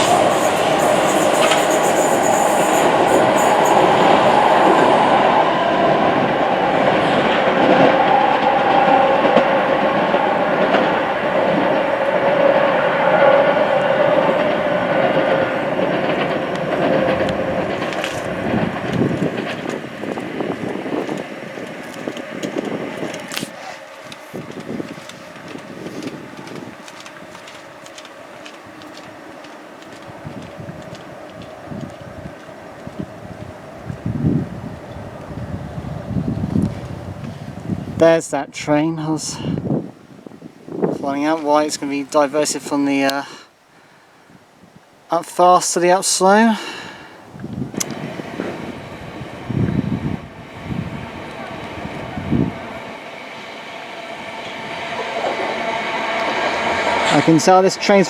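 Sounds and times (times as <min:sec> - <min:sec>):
high-pitched wheel squeal: 0:00.0 - 0:15.4
train wheels on rails: 0:00.0 - 0:38.1, 0:45.7 - 0:58.0.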